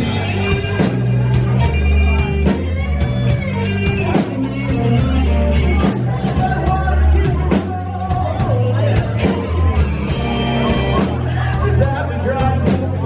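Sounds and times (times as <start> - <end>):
bass guitar: 0.0 - 13.0
drums: 0.0 - 13.0
electric guitar lead: 0.0 - 13.0.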